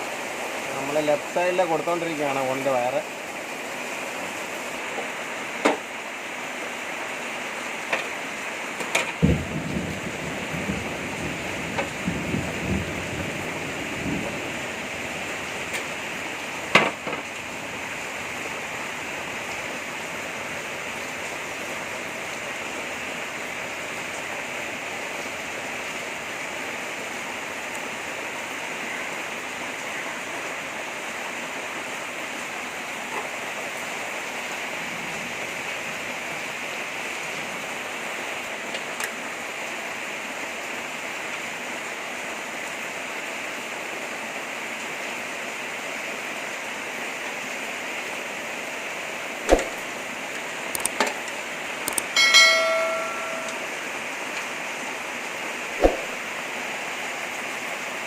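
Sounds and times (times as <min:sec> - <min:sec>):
heavy rain hissing: 0:00.0 - 0:58.0
sharp knock: 0:55.8 - 0:56.1.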